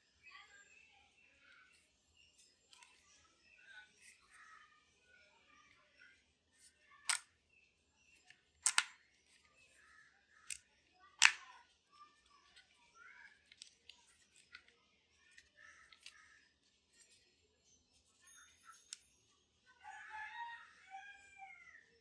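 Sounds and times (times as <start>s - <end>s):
sharp clicks of handling: 7.1s - 7.3s, 8.6s - 9.0s, 11.2s - 11.5s.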